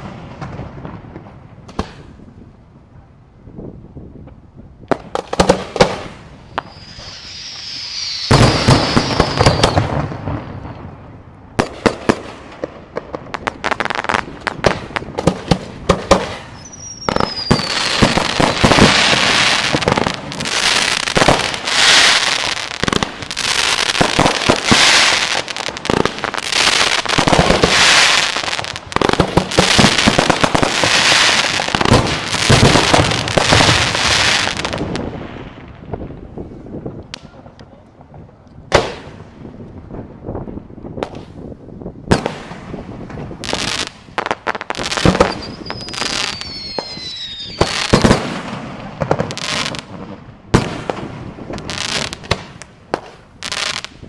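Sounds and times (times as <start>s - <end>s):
firework crackling: 4.9s - 39.9s, 40.8s - 54.0s
firework whistles falling in pitch: 6.5s - 9.9s, 16.6s - 18.2s, 44.9s - 48.1s.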